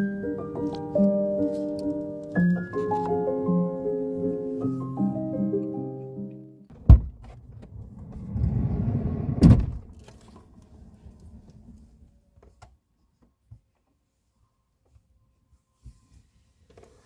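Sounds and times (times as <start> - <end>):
car door slamming: 6.8 - 7.3, 9.4 - 9.9.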